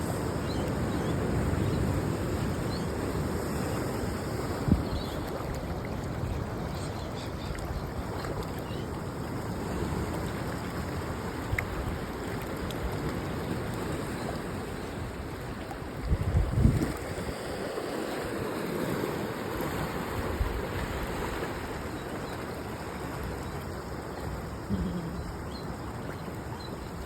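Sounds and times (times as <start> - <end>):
wind on microphone: 0.0 - 6.7, 15.9 - 19.0
surf on rocky shore: 0.0 - 27.0.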